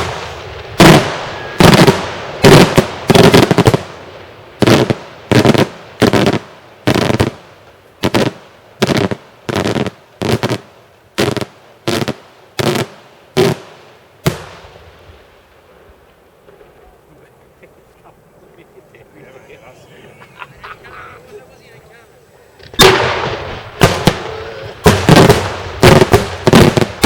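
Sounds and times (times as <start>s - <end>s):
fireworks bangs echoing: 0.0s - 19.0s, 22.6s - 27.0s.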